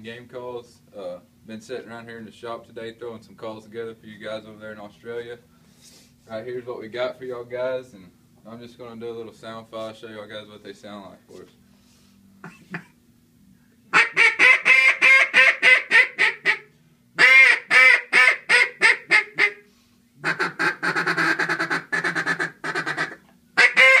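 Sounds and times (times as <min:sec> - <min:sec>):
duck call quacking: 0:13.9 - 0:24.0.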